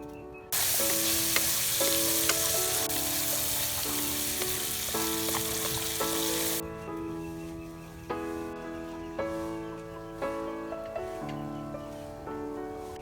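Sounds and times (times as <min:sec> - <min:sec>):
food sizzling in a pan: 0:00.6 - 0:06.6.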